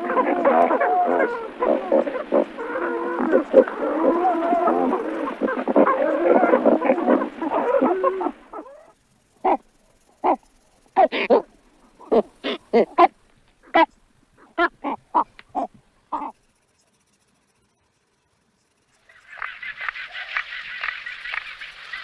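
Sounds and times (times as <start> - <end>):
short barking animal calls: 0.0 - 16.3.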